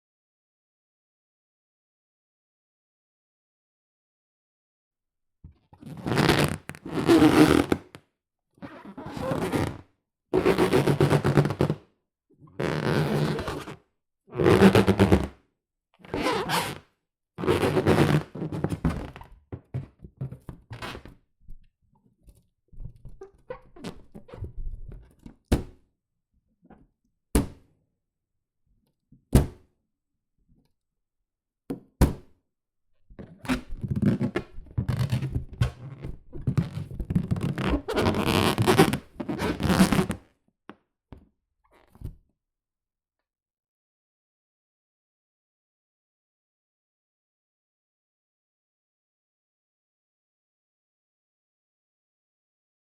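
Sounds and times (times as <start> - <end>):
hands rubbing rubber balloon: 14.4 - 15.4, 17.5 - 19.2, 36.4 - 40.2.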